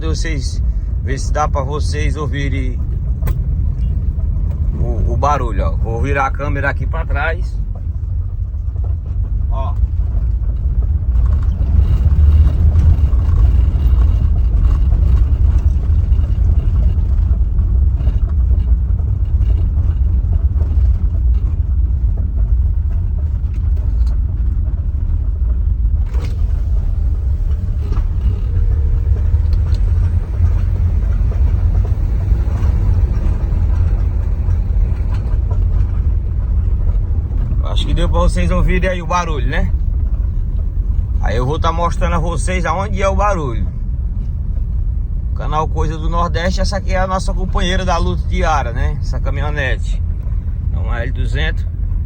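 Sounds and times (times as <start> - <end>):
tyres rumbling over cobblestones: 0.0 - 52.0.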